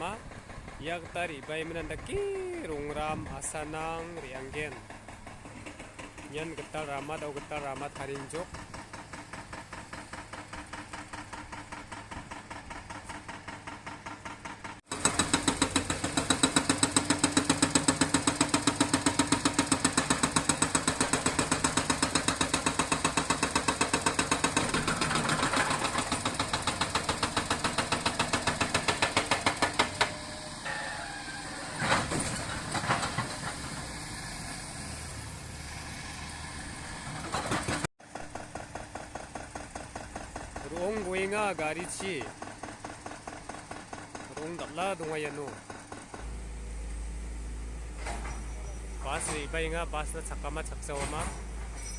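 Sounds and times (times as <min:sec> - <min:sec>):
construction machinery engine pulsing: 0:00.0 - 0:35.5, 0:36.6 - 0:51.9.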